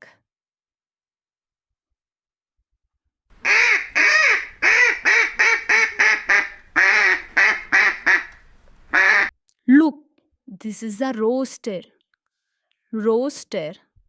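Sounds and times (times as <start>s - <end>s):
duck quacking: 3.4s - 9.3s.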